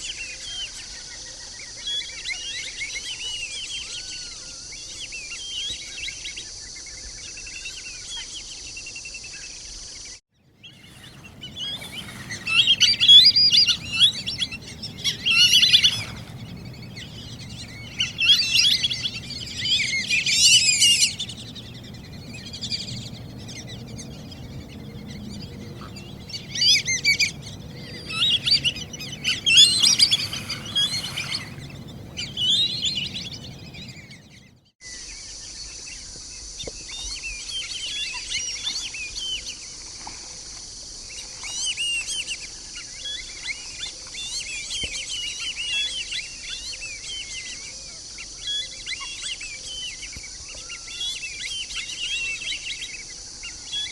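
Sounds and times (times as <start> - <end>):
ducks whistling calls: 10.6 - 34.5.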